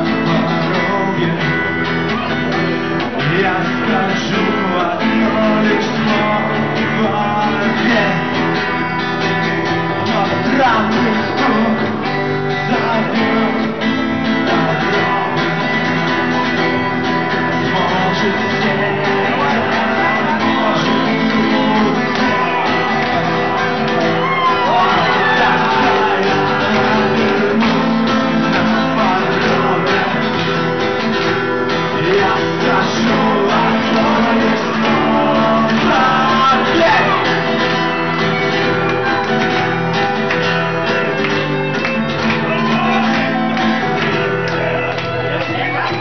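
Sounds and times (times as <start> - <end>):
strummed acoustic guitar: 0.0 - 46.0
person singing and shouting: 17.3 - 30.4, 31.9 - 38.1, 42.3 - 44.0.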